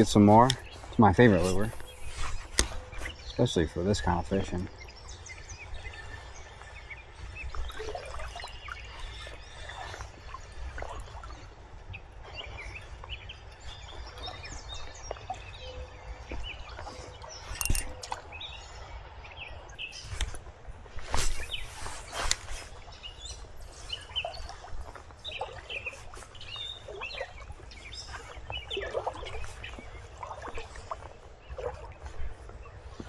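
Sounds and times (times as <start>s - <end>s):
small birds chirping: 0.0s - 10.6s, 16.4s - 18.7s, 21.1s - 24.6s.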